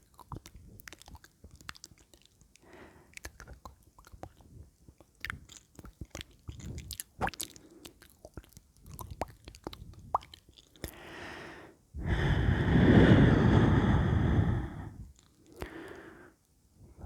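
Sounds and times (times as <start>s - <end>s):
tongue clicks and lip smacks: 0.0s - 11.0s, 15.1s - 16.0s
soft breath: 10.9s - 17.0s.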